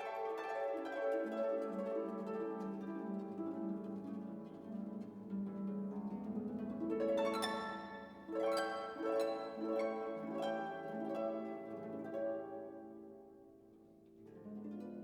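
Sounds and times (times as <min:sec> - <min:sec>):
plucked harp-like string music: 0:00.0 - 0:15.0.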